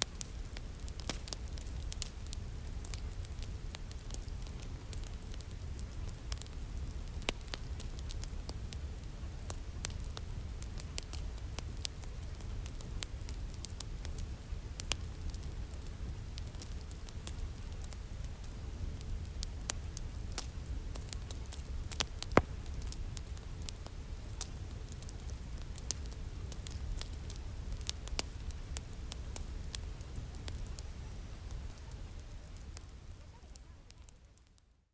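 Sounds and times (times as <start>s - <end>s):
steady pink noise: 20.6s - 24.8s
loud pop: 22.3s - 22.7s.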